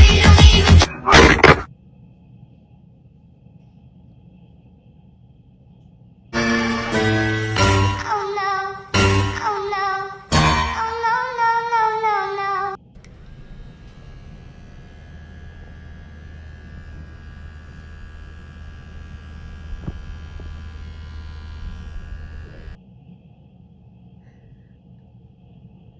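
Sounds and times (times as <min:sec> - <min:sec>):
faint hum: 0:00.9 - 0:25.9
small vibrating motor buzzing: 0:13.0 - 0:22.8.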